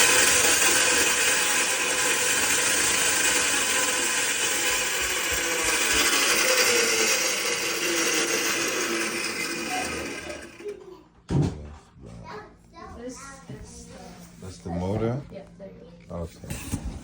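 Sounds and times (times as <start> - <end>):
range hood blower whirring roar: 0.0 - 10.8.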